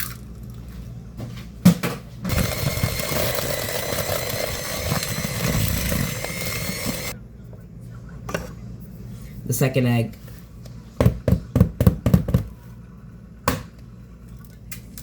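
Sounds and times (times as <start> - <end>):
electric mixer running: 2.3 - 7.2.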